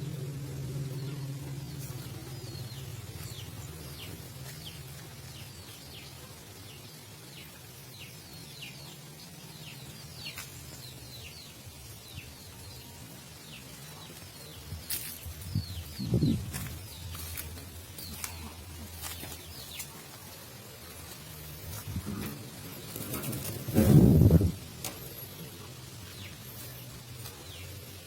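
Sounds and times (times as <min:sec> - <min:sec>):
low steady hum: 0:00.0 - 0:10.0
songbird chirping: 0:00.0 - 0:28.0.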